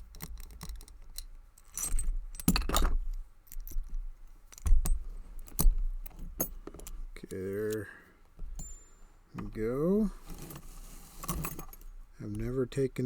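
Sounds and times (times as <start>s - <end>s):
padlock clicking and rattling: 0.0s - 7.9s.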